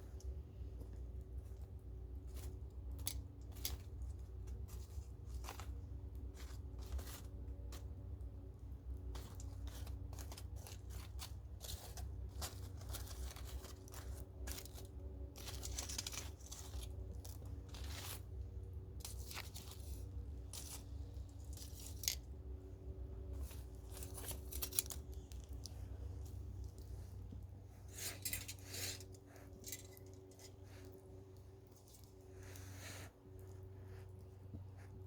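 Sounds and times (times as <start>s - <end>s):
low steady rumble: 0.0s - 35.0s.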